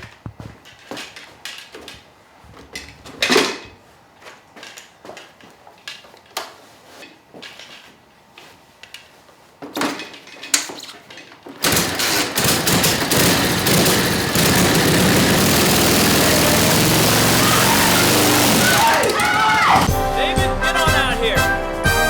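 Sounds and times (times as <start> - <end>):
motorcycle engine running: 11.6 - 19.9.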